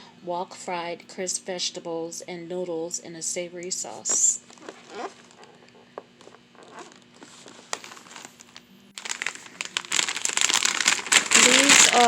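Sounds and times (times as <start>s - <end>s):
crinkling plastic chip bag: 4.2s - 5.6s, 6.6s - 12.0s.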